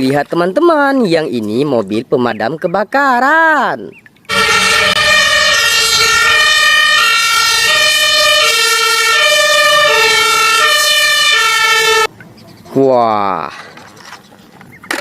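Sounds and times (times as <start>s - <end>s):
two-tone fire engine siren: 4.3s - 12.1s.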